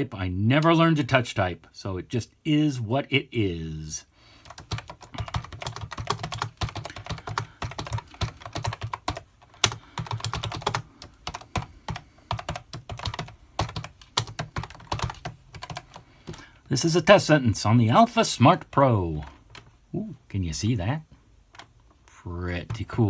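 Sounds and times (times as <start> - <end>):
keyboard keys clicking: 4.5 - 16.4.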